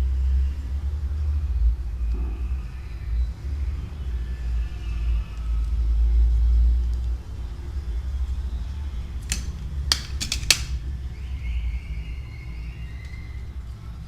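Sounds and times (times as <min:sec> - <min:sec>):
small tools clicking: 0:09.2 - 0:10.8.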